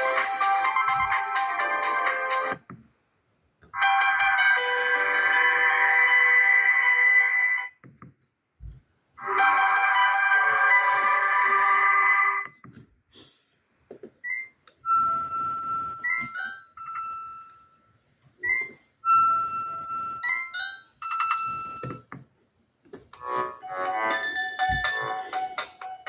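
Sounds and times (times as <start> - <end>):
phone ringtone melody: 0.0 - 2.6, 3.8 - 6.6, 14.9 - 17.8, 18.4 - 22.1, 23.2 - 26.0.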